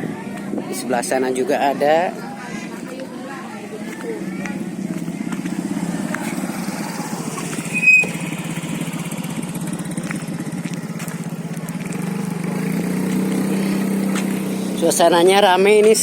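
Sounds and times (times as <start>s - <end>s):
small engine running: 3.8s - 15.2s.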